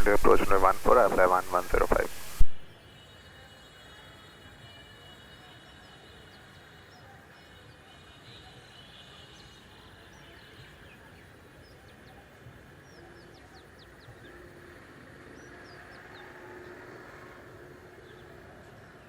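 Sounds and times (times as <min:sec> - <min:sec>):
faint low rumble: 0:00.0 - 0:02.6.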